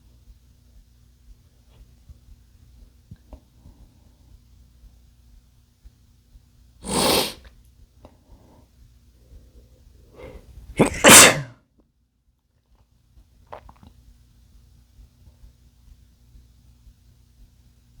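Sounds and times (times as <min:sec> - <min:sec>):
man sneezing: 0:06.8 - 0:07.4, 0:10.8 - 0:11.6.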